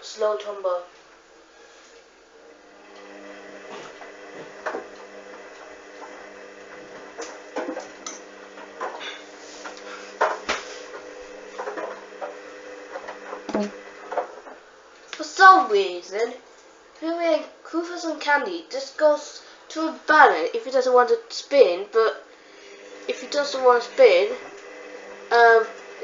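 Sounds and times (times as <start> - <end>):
washing machine motor hum: 2.3 - 14.8, 21.9 - 26.0.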